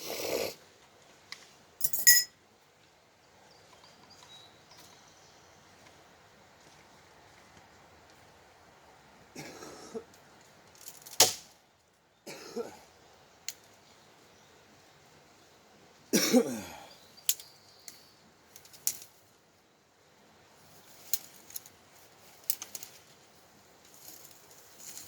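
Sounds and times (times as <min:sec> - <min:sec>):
person coughing: 0:12.3 - 0:12.8, 0:16.2 - 0:16.8.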